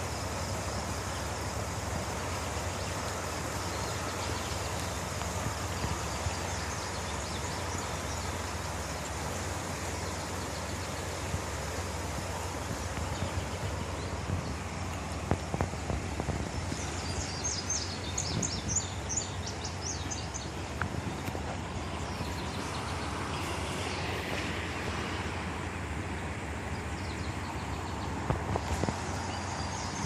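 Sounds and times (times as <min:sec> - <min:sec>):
bird chirping: 0:16.5 - 0:20.6.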